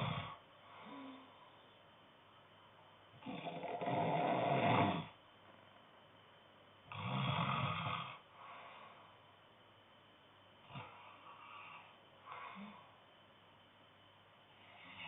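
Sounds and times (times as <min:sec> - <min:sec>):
man snoring: 0:00.0 - 0:01.2, 0:03.2 - 0:05.2, 0:06.9 - 0:08.2, 0:14.7 - 0:15.0
soft breath out: 0:00.6 - 0:01.7, 0:08.3 - 0:09.3, 0:10.8 - 0:13.0.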